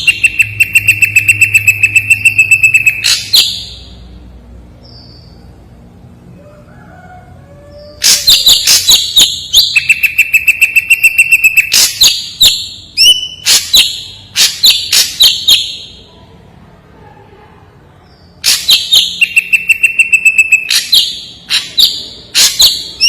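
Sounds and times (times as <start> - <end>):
bird singing sharp chips and whistle: 0.0 - 3.8, 8.0 - 16.0, 18.4 - 23.0.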